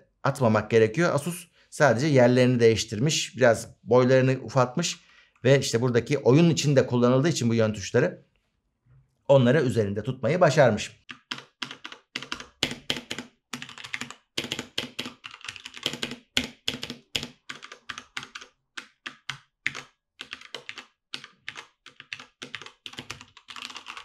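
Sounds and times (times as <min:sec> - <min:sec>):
mechanical keyboard typing: 0:11.1 - 0:24.0.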